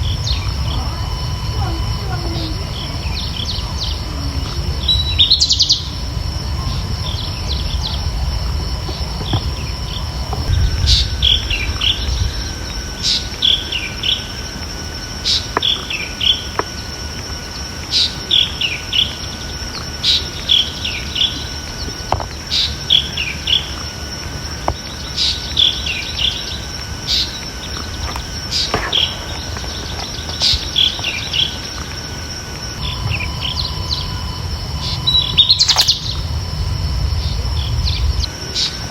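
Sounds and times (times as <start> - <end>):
bird chirping: 0.0 - 14.4, 15.2 - 38.8
low rumble: 0.0 - 15.1, 32.7 - 38.5
steady high whine: 0.0 - 38.9.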